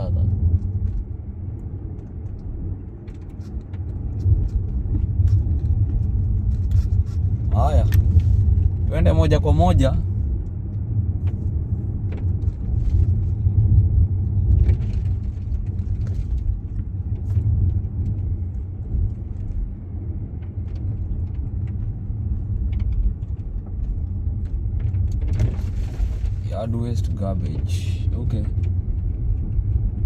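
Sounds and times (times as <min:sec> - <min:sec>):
car road and engine rumble: 0:00.0 - 0:30.0
light rattles and ticks: 0:00.2 - 0:13.5, 0:14.4 - 0:30.0.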